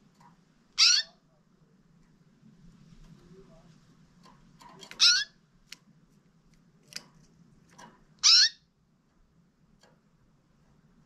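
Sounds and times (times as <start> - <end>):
low steady hum: 0.0 - 11.0
canary calls: 0.7 - 1.3, 4.8 - 5.4, 8.2 - 8.8.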